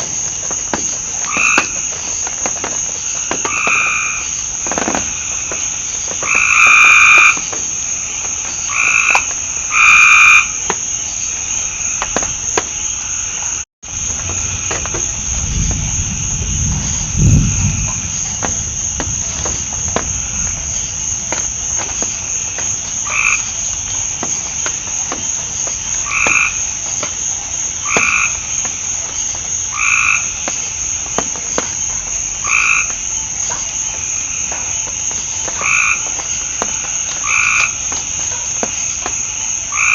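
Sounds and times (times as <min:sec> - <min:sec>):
frogs calling: 0:00.0 - 0:39.9
low rumble: 0:13.9 - 0:23.9.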